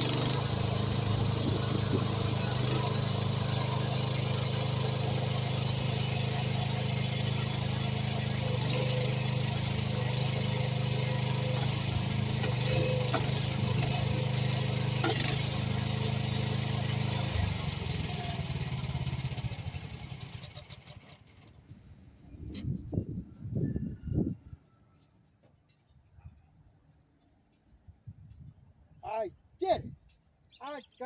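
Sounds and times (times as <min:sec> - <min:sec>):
excavator engine running: 0:00.0 - 0:22.0.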